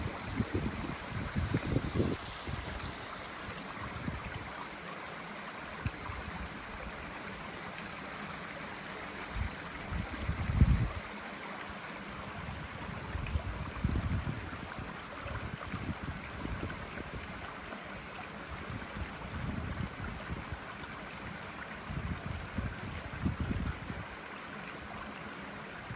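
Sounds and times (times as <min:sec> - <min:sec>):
wind buffeting microphone: 0:00.0 - 0:03.1, 0:03.7 - 0:04.6, 0:09.3 - 0:11.1, 0:12.4 - 0:17.5, 0:18.5 - 0:24.2
rushing hiss of air or water: 0:00.0 - 0:25.9.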